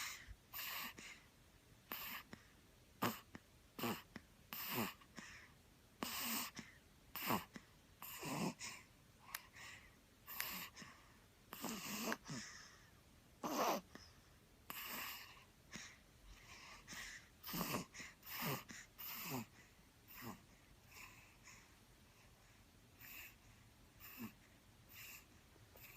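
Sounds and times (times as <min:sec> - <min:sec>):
child snoring: 0:01.9 - 0:02.3, 0:03.0 - 0:05.1, 0:06.0 - 0:08.8, 0:11.5 - 0:12.5, 0:13.4 - 0:14.0, 0:14.7 - 0:15.4, 0:17.4 - 0:20.4, 0:24.0 - 0:25.9.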